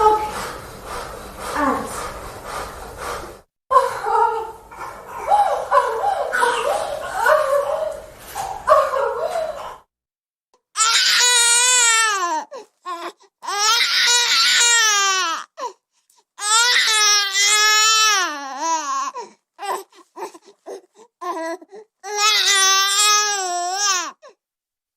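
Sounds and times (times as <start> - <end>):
baby gasping sobs: 10.8 - 15.8, 16.4 - 24.4
newborn baby crying: 10.8 - 15.8, 16.4 - 24.4.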